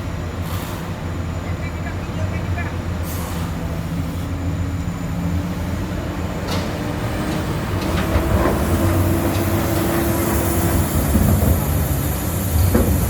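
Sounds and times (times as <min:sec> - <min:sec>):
excavator diesel engine running: 0:00.0 - 0:13.0.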